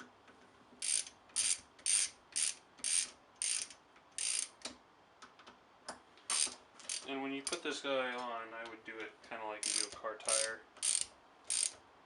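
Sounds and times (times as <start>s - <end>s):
ratchet wrench clicking: 0.8s - 4.6s, 6.3s - 7.6s, 9.6s - 11.8s.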